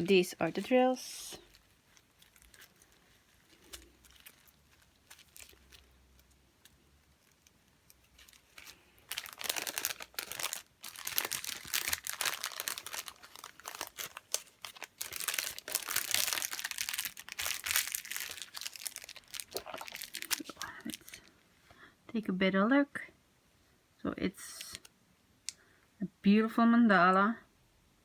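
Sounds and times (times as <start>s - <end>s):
packaging crinkling: 0.0s - 21.4s.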